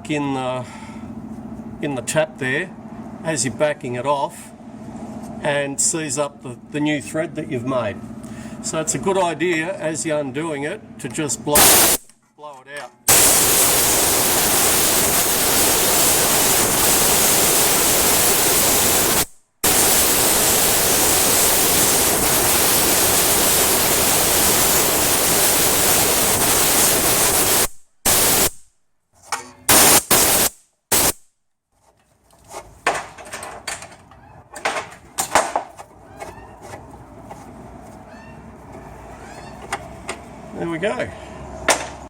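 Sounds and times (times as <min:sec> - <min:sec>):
compressed air hissing: 0:11.6 - 0:12.1, 0:13.1 - 0:28.7, 0:29.7 - 0:31.3
short air blasts: 0:11.6 - 0:12.1, 0:13.1 - 0:28.7, 0:29.7 - 0:31.3.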